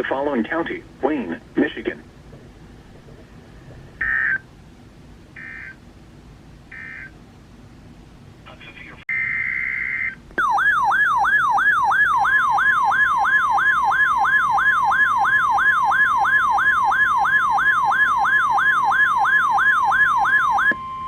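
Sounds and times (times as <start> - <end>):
electronic alert siren wailing: 4.0 - 4.4, 5.4 - 5.8, 6.7 - 7.1, 9.1 - 21.0.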